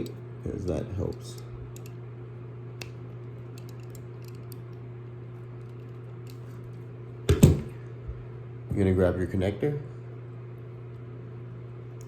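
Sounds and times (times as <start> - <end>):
steady low hum: 0.0 - 12.0
cable wires clicking in fingers: 1.0 - 2.0, 2.8 - 4.8.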